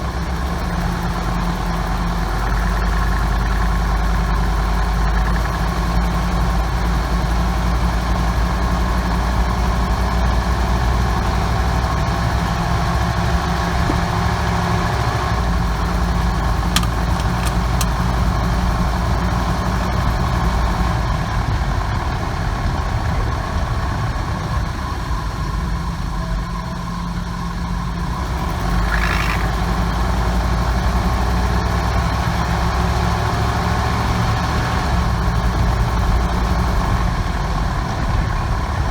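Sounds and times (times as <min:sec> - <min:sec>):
van engine running: 0:00.0 - 0:38.9
short clicks: 0:16.6 - 0:18.0.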